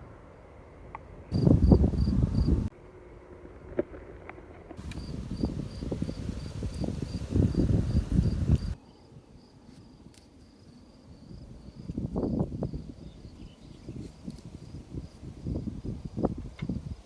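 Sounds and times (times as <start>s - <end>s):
cricket chirping: 1.3s - 2.7s, 4.8s - 16.3s.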